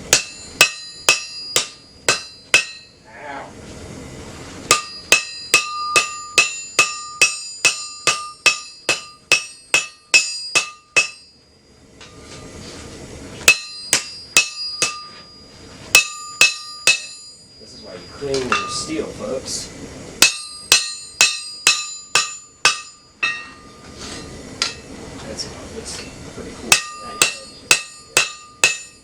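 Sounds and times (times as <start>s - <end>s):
hammer ringing on anvil: 0.0s - 3.0s, 4.7s - 12.5s, 13.5s - 19.1s, 20.2s - 25.0s, 26.0s - 29.0s
steady rushing hiss: 11.8s - 28.9s.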